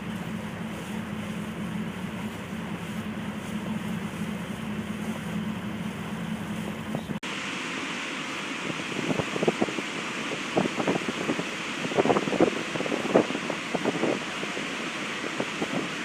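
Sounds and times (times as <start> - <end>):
waterfall rushing: 6.4 - 16.0.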